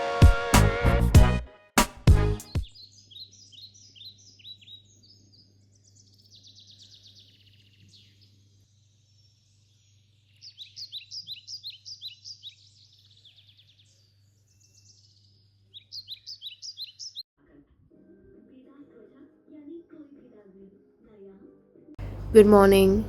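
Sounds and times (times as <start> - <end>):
birds singing trilled phrases: 2.5 - 17.2
faint low hum: 22.0 - 23.0.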